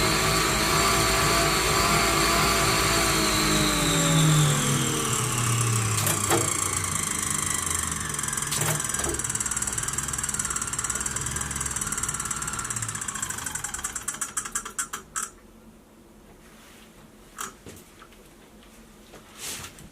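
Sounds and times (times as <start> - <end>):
turbo trainer spinning rhythmically: 0.0 - 15.0.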